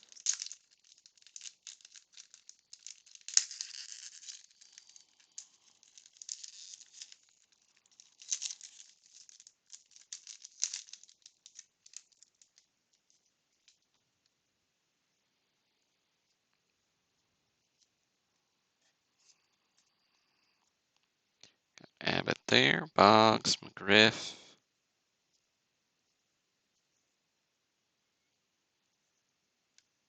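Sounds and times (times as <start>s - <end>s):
wax wrapper crinkling: 0.0s - 14.4s.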